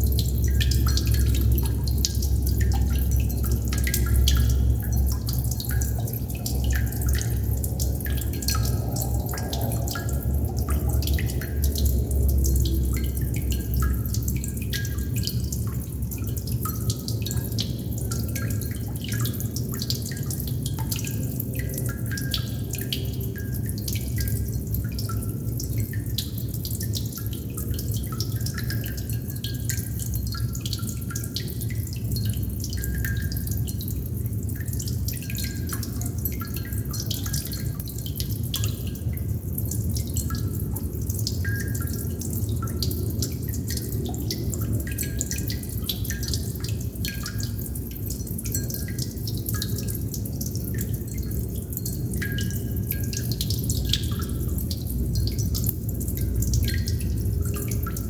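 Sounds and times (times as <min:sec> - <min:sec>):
steady low rumble: 0:00.0 - 0:26.0
water droplets dripping: 0:00.0 - 0:58.0.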